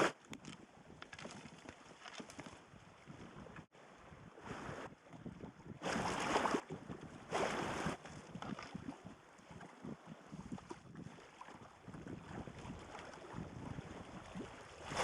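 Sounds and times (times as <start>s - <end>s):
moving water crackle: 0.2s - 3.7s
paddle splashing through water: 1.0s - 15.0s.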